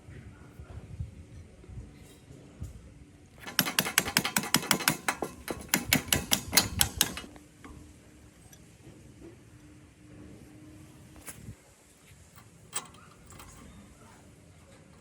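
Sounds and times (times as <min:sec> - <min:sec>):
rapid ratchet clicking: 0:03.4 - 0:07.3.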